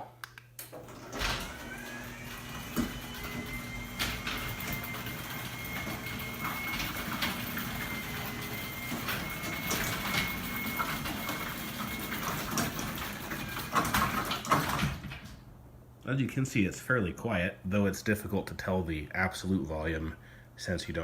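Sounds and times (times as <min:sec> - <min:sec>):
door clicks and rattles: 0:00.6 - 0:15.5
garage door opener motor: 0:00.6 - 0:15.5.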